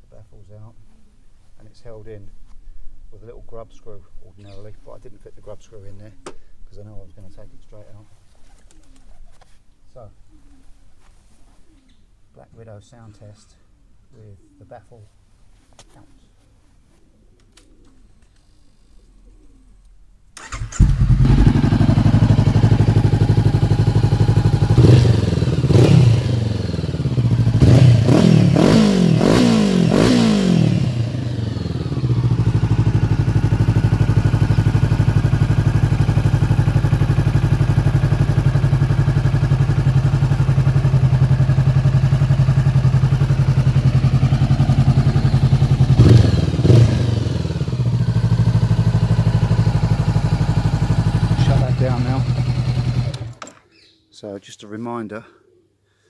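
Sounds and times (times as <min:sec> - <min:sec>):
motorcycle engine revving and idling: 0:20.4 - 0:53.5.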